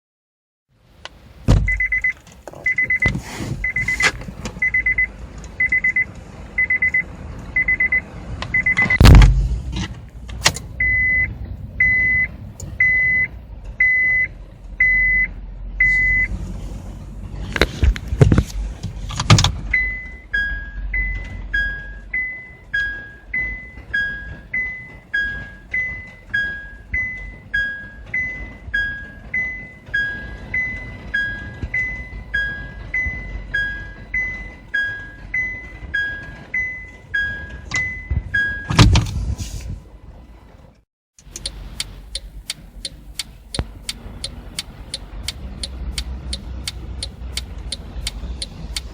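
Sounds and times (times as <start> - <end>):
loud thumps: 1.4 - 4.5, 9.0 - 10.8, 38.1 - 39.2.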